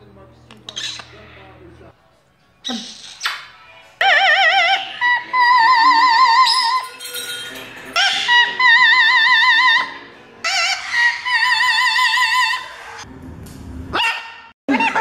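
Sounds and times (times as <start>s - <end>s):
parrot singing warble: 4.0s - 7.0s.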